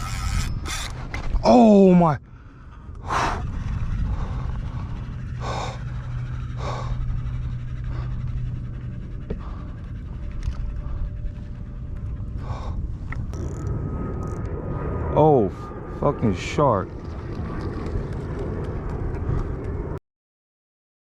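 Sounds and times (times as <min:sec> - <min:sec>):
low steady hum: 0:00.0 - 0:20.0
man breathing hard: 0:02.2 - 0:11.6.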